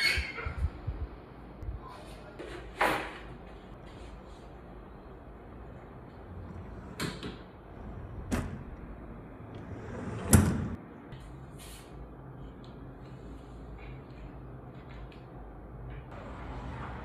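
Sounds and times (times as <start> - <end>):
door sliding: 5.4 - 10.8.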